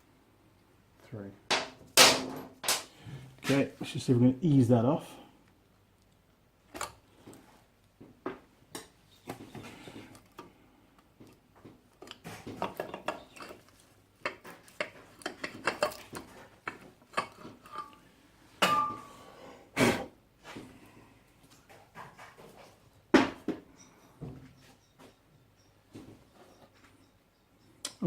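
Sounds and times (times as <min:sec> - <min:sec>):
metallic clinks and knocks: 0:12.0 - 0:18.0.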